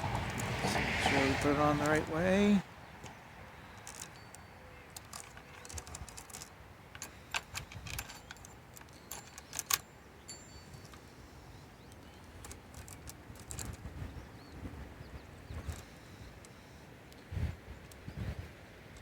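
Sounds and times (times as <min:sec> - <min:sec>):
saw chain clinking and rattling: 0:03.8 - 0:11.2.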